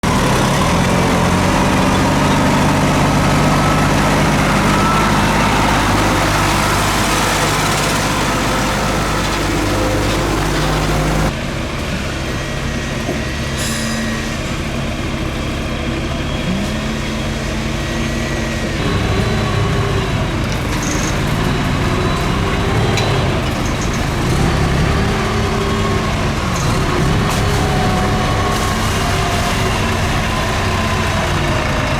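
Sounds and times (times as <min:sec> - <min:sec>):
heavy diesel truck engine running: 0:00.0 - 0:12.9, 0:14.8 - 0:31.9.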